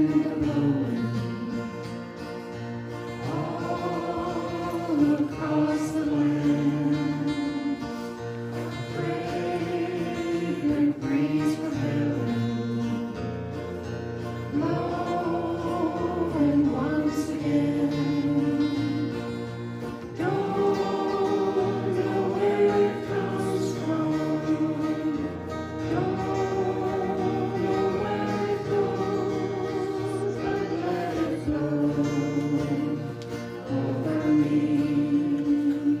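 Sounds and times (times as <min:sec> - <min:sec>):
instrumental accompaniment: 0:00.0 - 0:36.0
voices singing worship song: 0:00.0 - 0:36.0.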